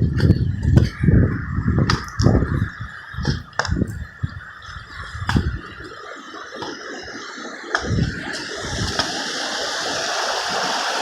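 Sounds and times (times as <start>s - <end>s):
footsteps on rocky ground: 3.2s - 6.0s.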